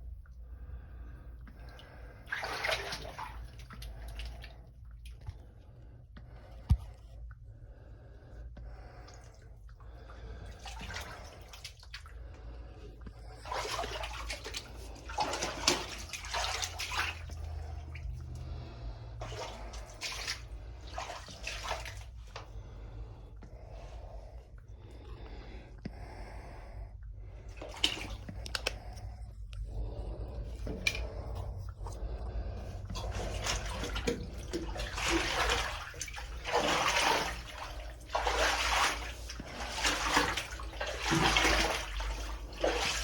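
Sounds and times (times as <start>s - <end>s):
low hum: 21.9s - 36.6s.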